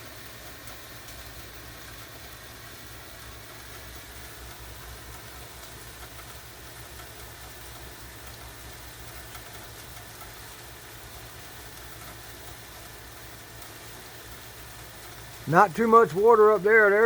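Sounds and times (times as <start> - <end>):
low steady rumble: 0.4 - 17.0
light rain falling: 0.6 - 16.9.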